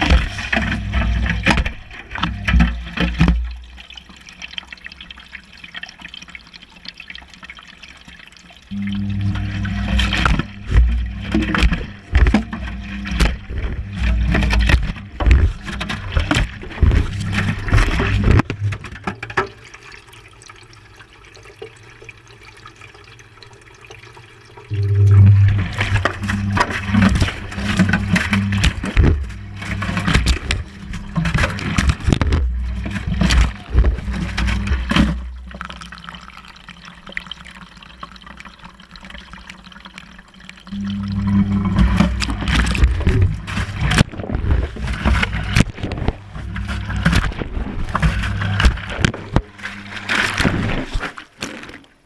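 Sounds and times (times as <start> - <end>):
water sloshing: 0.0 - 52.0
low motor hum: 8.7 - 19.0, 24.7 - 35.8, 40.7 - 51.0.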